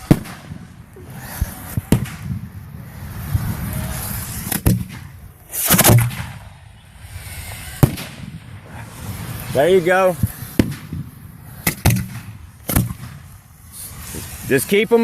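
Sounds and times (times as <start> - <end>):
firework shells banging: 0.0 - 2.7, 4.3 - 6.6, 7.6 - 13.9.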